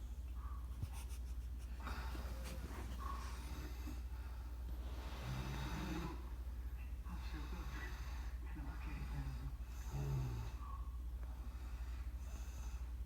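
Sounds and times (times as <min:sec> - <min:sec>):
steady low hum: 0:00.0 - 0:13.0
man snoring: 0:09.9 - 0:10.6.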